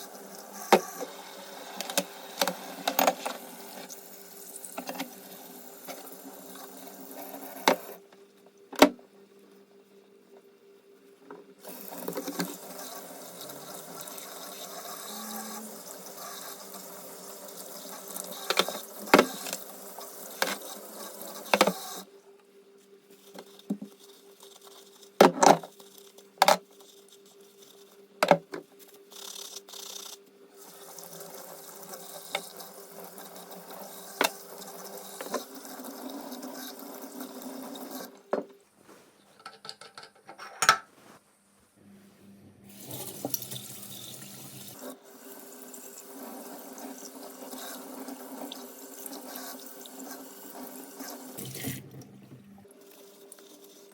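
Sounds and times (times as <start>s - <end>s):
tap water running into sink: 42.7s - 53.6s.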